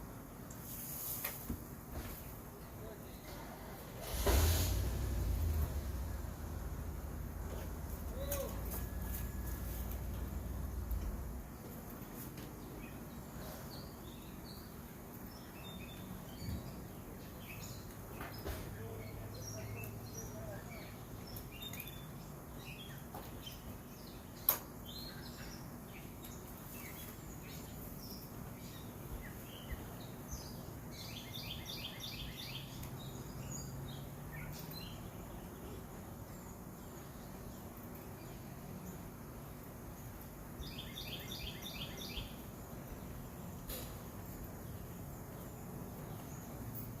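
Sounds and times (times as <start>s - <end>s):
low steady hum: 4.7s - 12.0s
small birds chirping: 4.8s - 47.0s.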